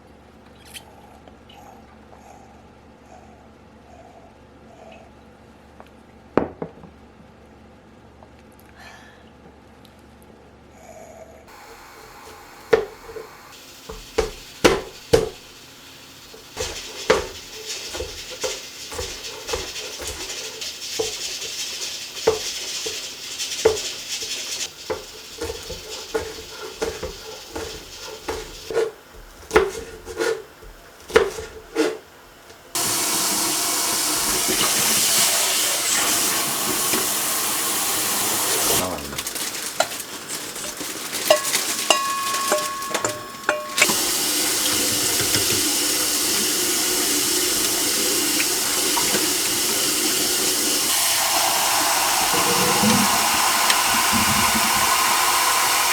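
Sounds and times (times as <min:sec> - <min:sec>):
tap water running: 0:11.5 - 0:55.9
knife chopping on cutting board: 0:12.7 - 0:13.2, 0:13.9 - 0:15.5, 0:16.5 - 0:20.4, 0:24.8 - 0:32.0.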